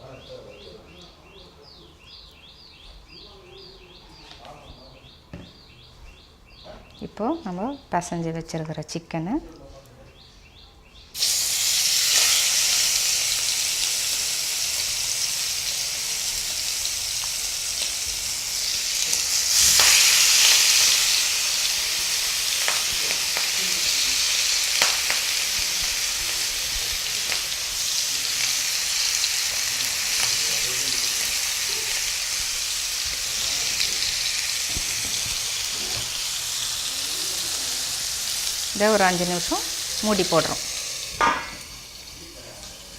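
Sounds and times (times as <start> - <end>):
chicken sizzling in hot oil: 11.2 - 42.9
oil popping: 22.5 - 37.3.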